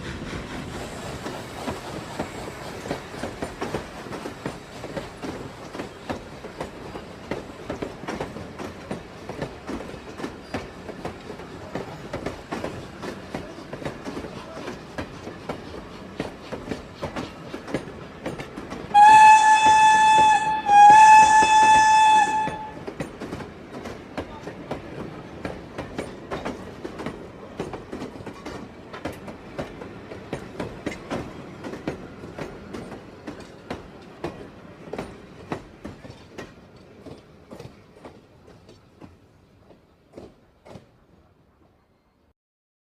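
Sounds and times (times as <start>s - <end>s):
steam train clatter: 0.0s - 42.2s
steam whistle blasts: 18.9s - 22.8s.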